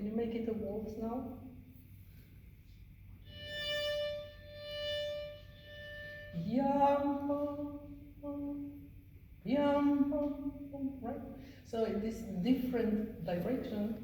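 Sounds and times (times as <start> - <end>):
solo violin bowed notes: 3.2 - 7.9.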